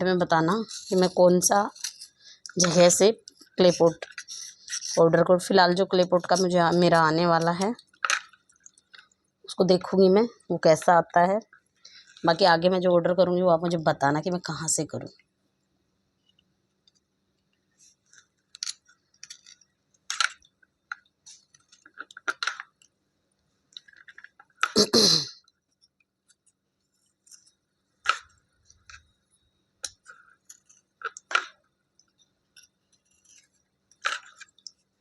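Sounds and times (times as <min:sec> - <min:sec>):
slate pieces clicking and scraping: 0:00.6 - 0:05.0, 0:18.0 - 0:22.9, 0:29.8 - 0:34.8.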